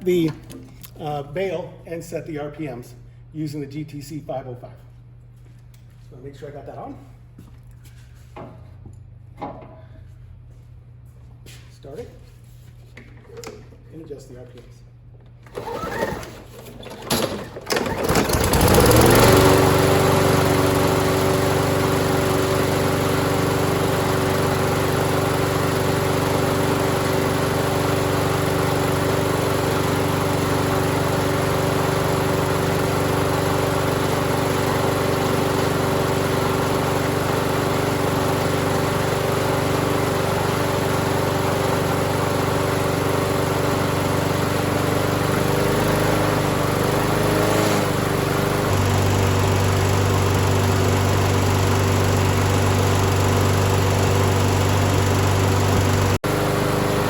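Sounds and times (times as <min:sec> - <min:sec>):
lawn mower engine starting and running: 0:15.2 - 0:57.0.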